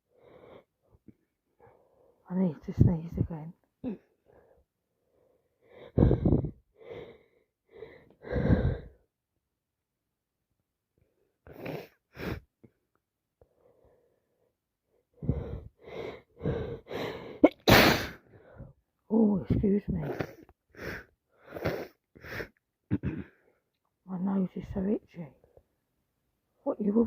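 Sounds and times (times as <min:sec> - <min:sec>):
wheezy gasps before sneeze: 0:11.4 - 0:12.5, 0:16.4 - 0:18.7, 0:20.0 - 0:23.4.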